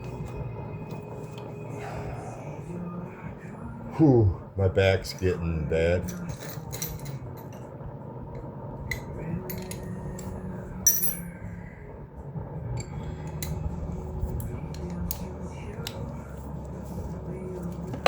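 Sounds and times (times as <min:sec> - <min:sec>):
low hum: 0:00.0 - 0:18.0
metallic clinks of hand tools: 0:10.9 - 0:11.2.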